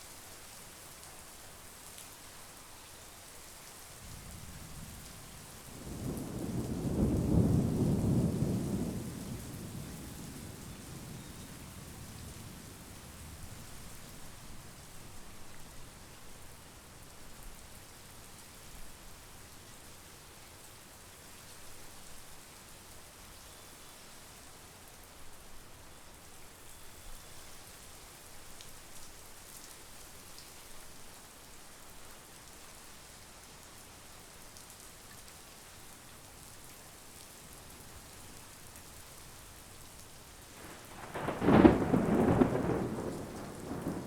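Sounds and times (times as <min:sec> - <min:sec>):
steady rain: 0:00.0 - 0:44.0
low rumble of thunder: 0:04.0 - 0:15.0, 0:40.6 - 0:44.0.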